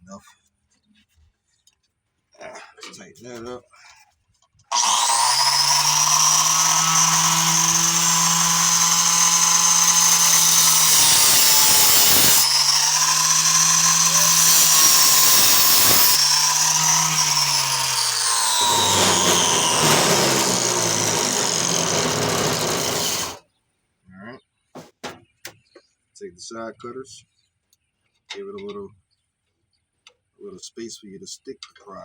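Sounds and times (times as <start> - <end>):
angle grinder cutting metal: 4.7 - 23.4.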